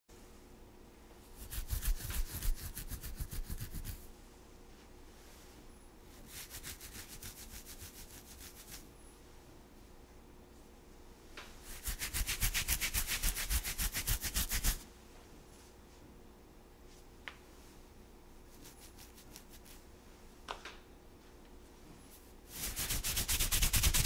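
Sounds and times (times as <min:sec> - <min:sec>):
fingernails scratching hair: 0:01.4 - 0:04.1, 0:06.2 - 0:08.9, 0:11.7 - 0:14.8, 0:18.5 - 0:19.8, 0:22.5 - 0:24.0.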